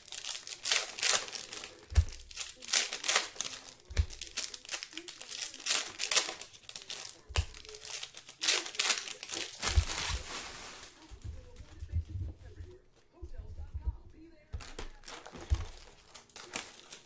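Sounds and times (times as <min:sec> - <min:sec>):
wrappers crinkling and tearing: 0:00.0 - 0:12.3, 0:13.6 - 0:17.0
dull thumps on table: 0:11.1 - 0:16.0.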